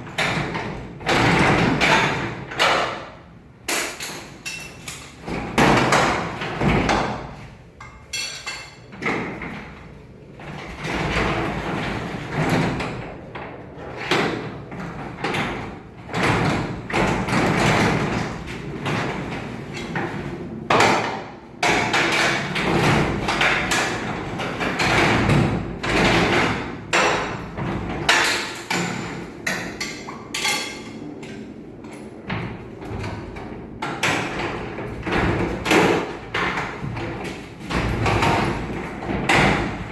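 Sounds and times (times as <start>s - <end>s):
hand tools knocking and scraping: 20.7s - 33.2s.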